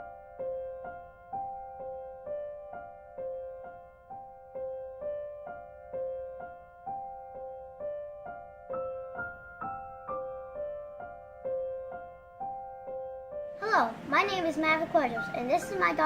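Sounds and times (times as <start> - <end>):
gentle piano notes: 0.0 - 16.0.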